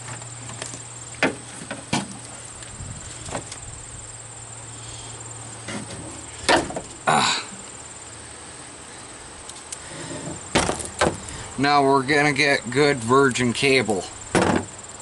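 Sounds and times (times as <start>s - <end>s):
crickets chirping: 0.0s - 15.0s
sharp knocks: 10.5s - 11.2s, 14.3s - 14.7s.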